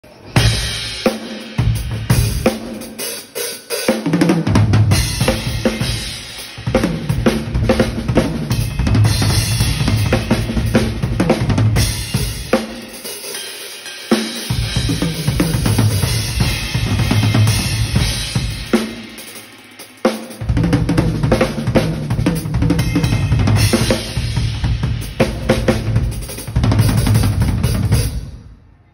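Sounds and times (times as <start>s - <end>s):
cymbals: 0.0s - 28.9s
bass drum: 4.5s - 12.6s, 14.5s - 19.2s, 20.4s - 28.2s.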